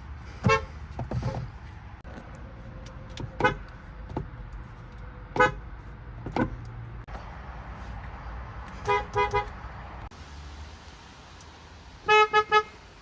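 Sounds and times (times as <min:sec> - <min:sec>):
car horn toots: 0:00.4 - 0:00.7, 0:05.4 - 0:05.6, 0:08.8 - 0:09.6, 0:12.1 - 0:12.8.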